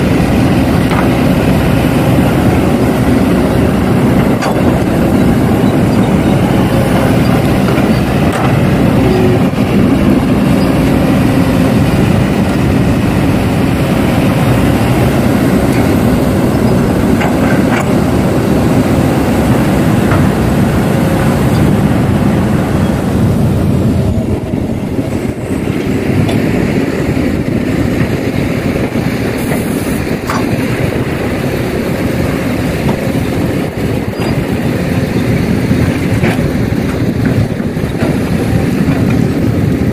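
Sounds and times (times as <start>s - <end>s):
diesel machinery rumble: 0.0s - 39.9s.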